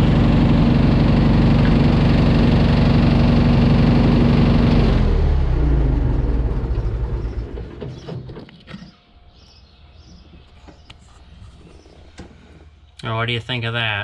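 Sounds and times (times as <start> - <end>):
engine running down: 0.0 - 10.4.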